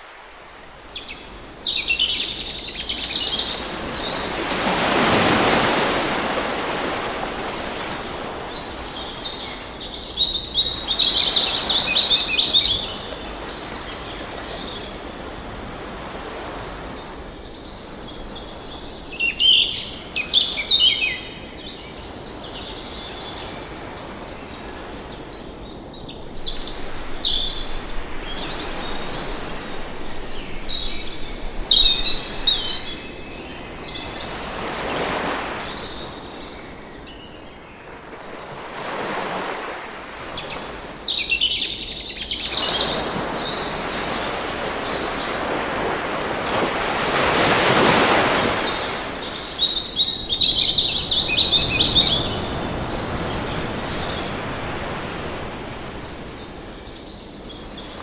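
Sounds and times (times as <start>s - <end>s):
water rushing: 0.0s - 17.3s, 26.2s - 37.0s, 37.9s - 41.2s, 42.4s - 56.7s
songbirds calling and trilling: 0.5s - 58.0s.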